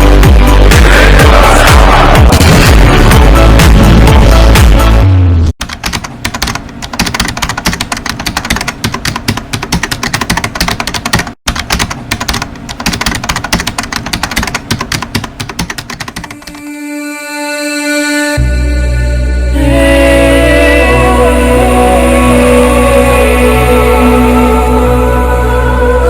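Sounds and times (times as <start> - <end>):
rapid dense clicking: 5.6 - 16.6.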